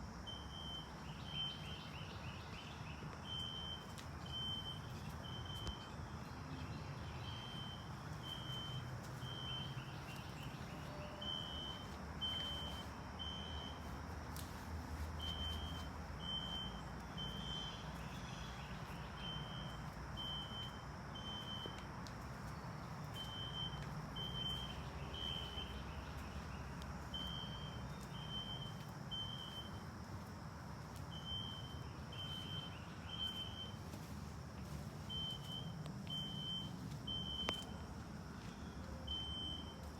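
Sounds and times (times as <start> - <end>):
fire alarm horn beeps: 0.3 - 1.8, 3.2 - 5.9, 7.4 - 9.9, 10.7 - 13.9, 15.2 - 17.8, 19.2 - 21.9, 23.2 - 25.8, 27.1 - 29.8, 31.1 - 33.8, 35.1 - 37.8, 39.1 - 39.8.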